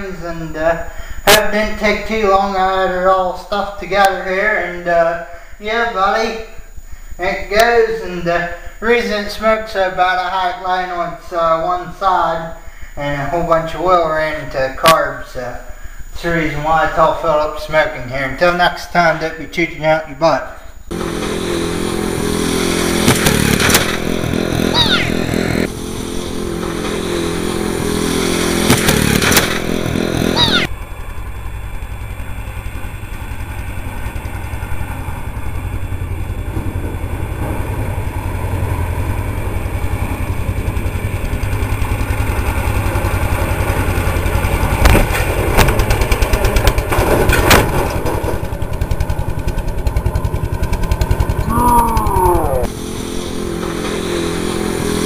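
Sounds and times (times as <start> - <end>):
riding lawn mower engine: 20.8 - 55.0.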